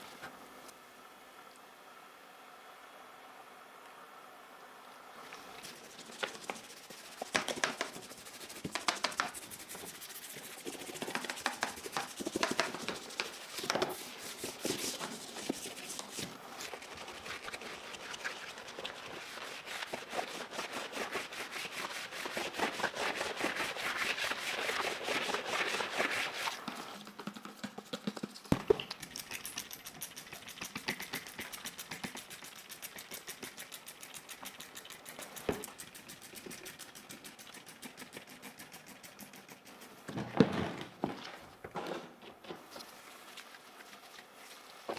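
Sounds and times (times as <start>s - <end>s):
scrubbing and rubbing keyboard: 5.6s - 28.0s.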